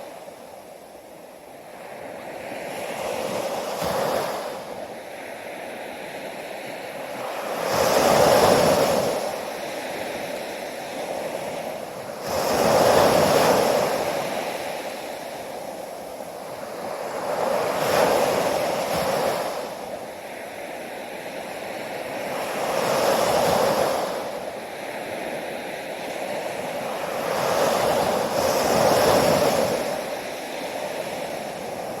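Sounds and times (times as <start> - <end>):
ocean waves crashing: 25.9 - 32.0.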